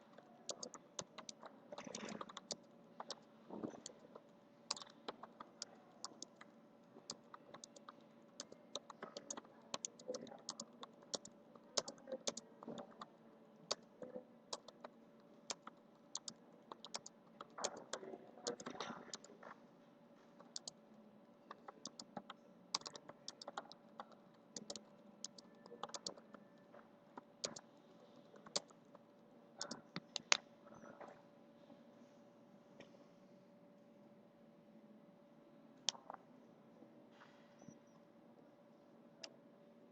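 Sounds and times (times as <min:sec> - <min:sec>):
computer keyboard typing: 0:00.0 - 0:19.5, 0:20.4 - 0:20.8, 0:21.4 - 0:30.4.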